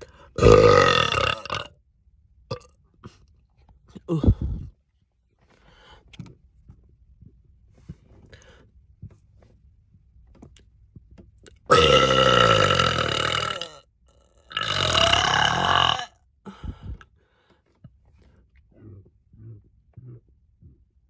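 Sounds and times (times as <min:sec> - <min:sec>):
woman burping: 0:00.4 - 0:01.7, 0:11.7 - 0:13.8, 0:14.5 - 0:16.1.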